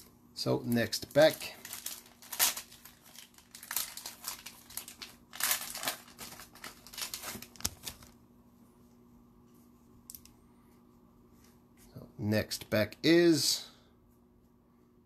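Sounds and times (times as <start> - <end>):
card pack wrapper crinkling: 0.7 - 8.2.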